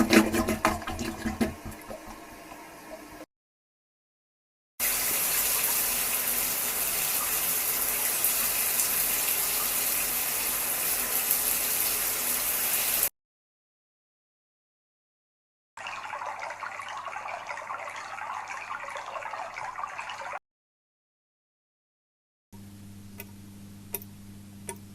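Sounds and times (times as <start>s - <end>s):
running water hissing: 4.8s - 13.1s.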